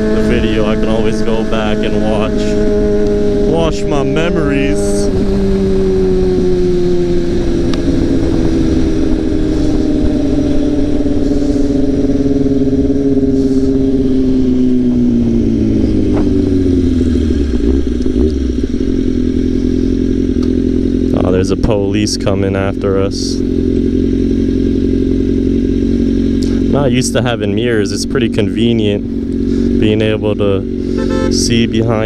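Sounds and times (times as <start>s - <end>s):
motorcycle engine running: 0.0s - 32.0s
wind noise: 2.3s - 18.2s.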